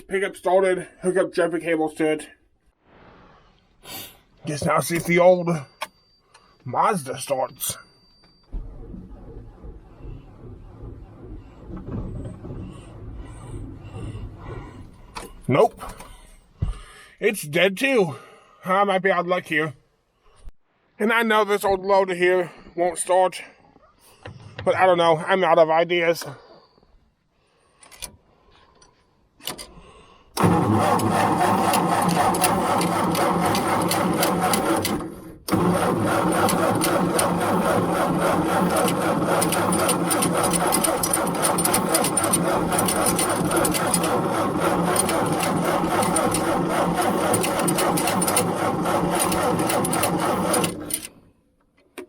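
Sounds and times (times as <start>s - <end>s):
starter motor cranking diesel engine: 5.9s - 16.5s, 29.4s - 51.3s.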